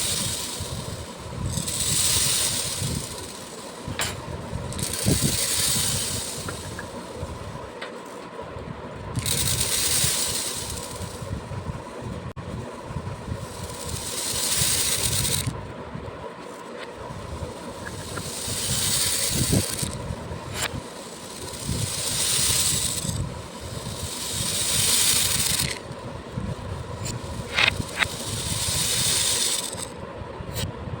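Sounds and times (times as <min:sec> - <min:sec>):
beads pouring and rattling: 0:00.0 - 0:08.2, 0:09.2 - 0:11.4, 0:13.2 - 0:15.6, 0:16.4 - 0:30.0.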